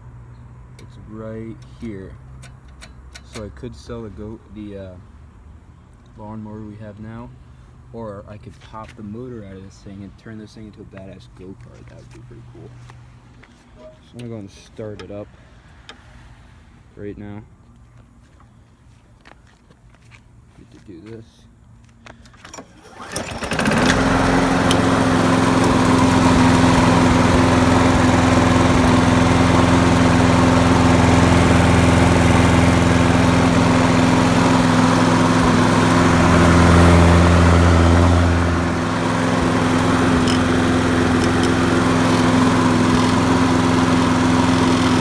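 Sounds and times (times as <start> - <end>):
lawn mower engine running: 0.0 - 5.6, 22.2 - 45.0.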